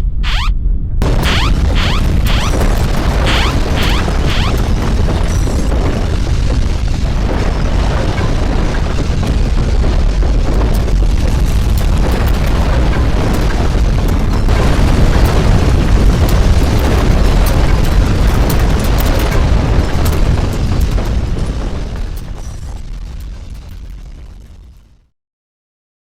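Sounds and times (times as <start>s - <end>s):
earthquake deep rumble: 0.0s - 25.1s
crackling and rattling: 0.1s - 24.8s.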